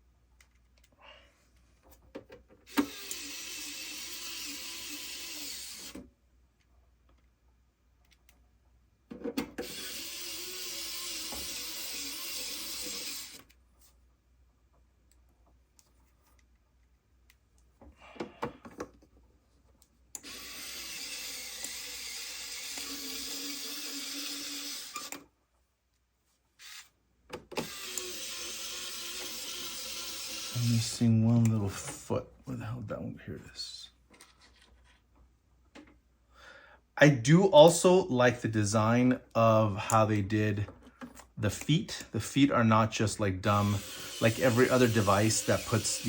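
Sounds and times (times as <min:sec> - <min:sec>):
electric screwdriver running: 0:02.7 - 0:06.0, 0:09.6 - 0:13.4, 0:20.2 - 0:25.2, 0:26.6 - 0:26.9, 0:27.6 - 0:30.9, 0:43.6 - 0:46.0.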